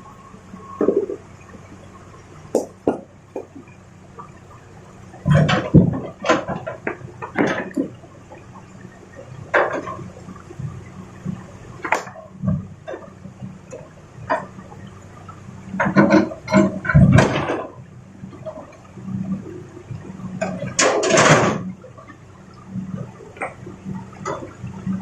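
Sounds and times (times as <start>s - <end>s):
excavator running: 0.0s - 25.0s
rock clattering and knocking: 2.5s - 3.6s.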